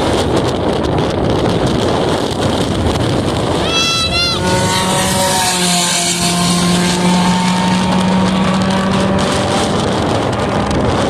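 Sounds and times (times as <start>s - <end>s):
race car engine running hard: 0.0s - 11.0s.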